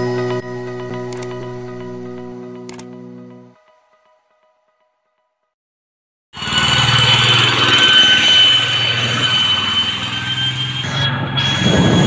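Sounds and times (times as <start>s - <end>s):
high whine: 6.4s - 12.0s.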